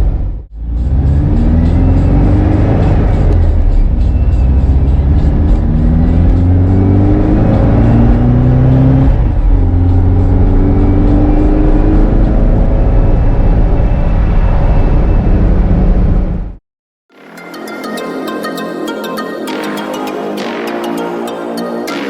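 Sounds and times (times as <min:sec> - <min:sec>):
car engine accelerating: 0:00.0 - 0:16.6.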